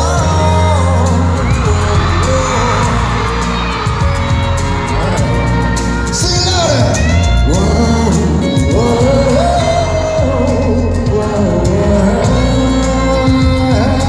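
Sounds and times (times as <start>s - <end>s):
live pop band: 0.0s - 14.0s
man singing: 0.0s - 14.0s.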